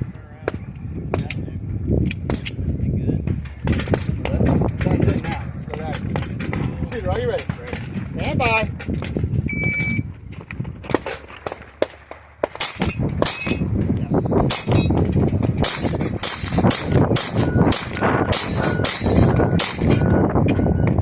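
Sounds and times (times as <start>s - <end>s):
pistol shots: 10.8s - 13.8s, 14.4s - 20.2s
steel plate clanging: 12.4s - 13.8s, 14.4s - 20.8s.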